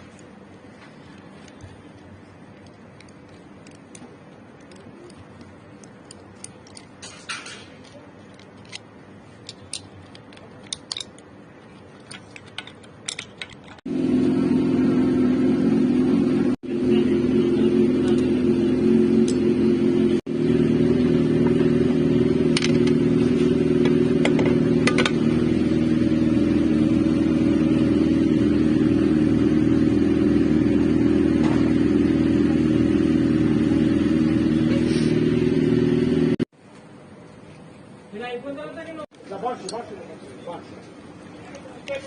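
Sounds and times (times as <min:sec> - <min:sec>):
motorcycle engine idling: 0:13.9 - 0:36.4.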